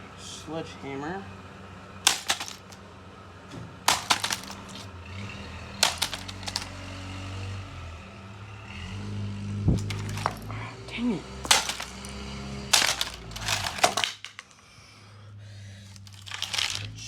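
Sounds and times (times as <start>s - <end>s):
plastic cracking and clattering: 2.1s - 2.8s, 3.9s - 4.9s, 5.8s - 6.7s, 9.8s - 10.5s, 11.5s - 12.1s, 12.7s - 14.5s, 16.0s - 17.0s.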